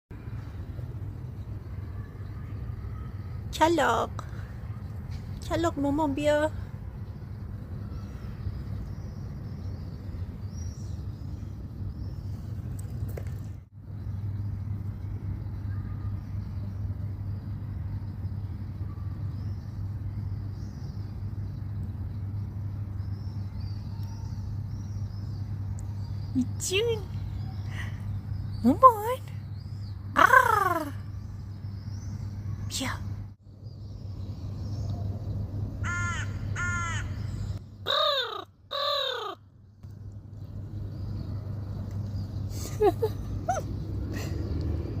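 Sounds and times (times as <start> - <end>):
steady low rumble: 31.0 - 45.0
crow cawing: 35.8 - 37.2, 37.9 - 39.4.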